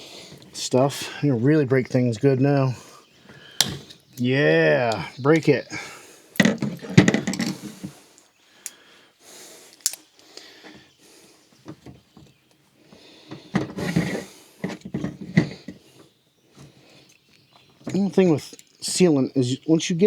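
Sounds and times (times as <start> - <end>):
screwdrivers scraping metal: 6.4 - 7.7
sealant cracking: 9.7 - 10.6.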